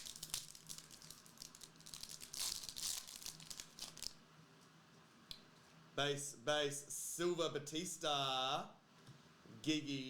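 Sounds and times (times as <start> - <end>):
card pack wrapper crinkling: 0.0 - 4.2.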